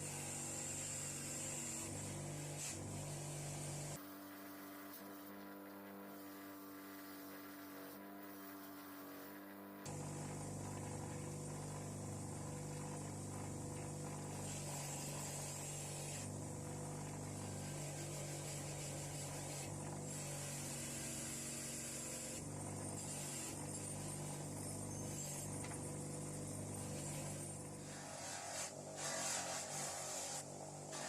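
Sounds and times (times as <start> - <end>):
bench grinder motor humming: 0.0 - 31.0
wire wheel brushing rust off metal: 26.8 - 31.0.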